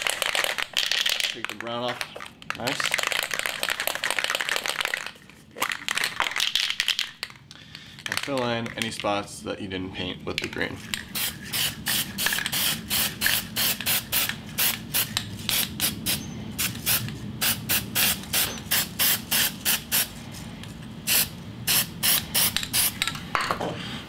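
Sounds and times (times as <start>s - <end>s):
aerosol spray can hissing: 11.1s - 20.1s, 21.1s - 23.0s.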